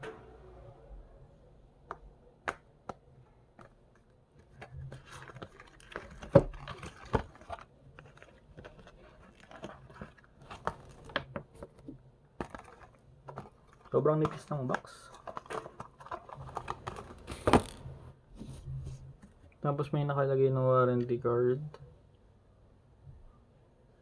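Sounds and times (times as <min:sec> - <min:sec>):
cardboard packaging rustling: 0:03.6 - 0:17.9.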